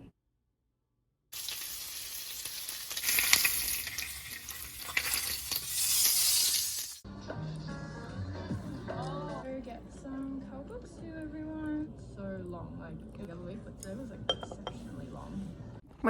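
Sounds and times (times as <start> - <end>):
food sizzling in a frying pan: 1.4 - 7.0.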